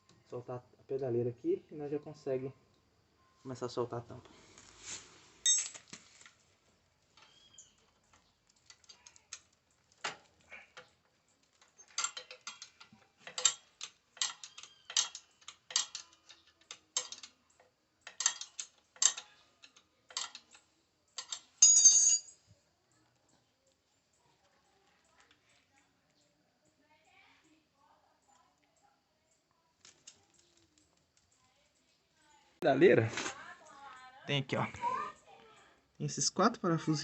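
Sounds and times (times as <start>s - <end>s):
metallic clink: 5.4s - 5.8s, 21.2s - 22.4s
ratchet wrench clicking: 11.8s - 17.3s, 18.0s - 20.6s.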